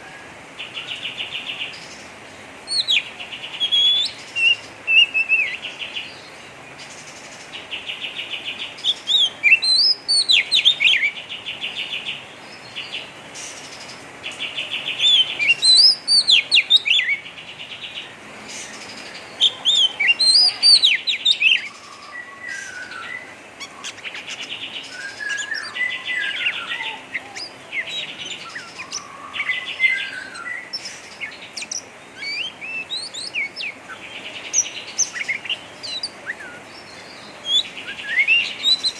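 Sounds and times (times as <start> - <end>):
bird chattering trills: 18.6 - 38.9.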